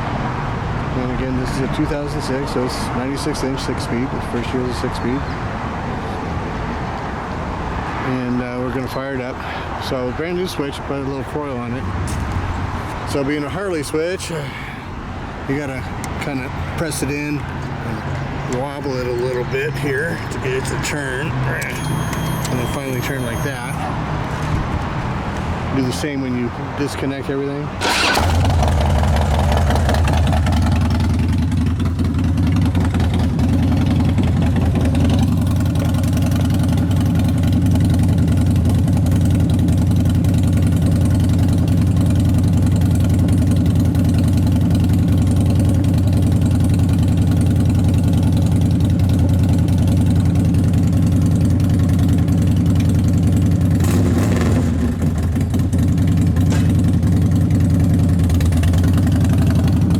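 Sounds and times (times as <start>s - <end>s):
motorcycle engine idling: 27.8s - 59.9s.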